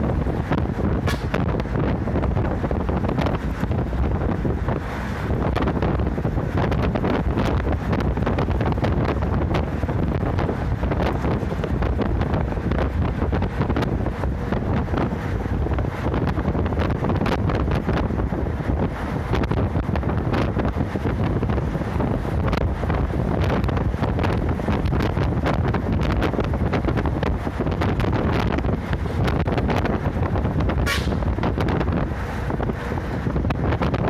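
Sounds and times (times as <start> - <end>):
bus engine and road noise: 0.0 - 34.0
rushing wind: 0.0 - 34.0.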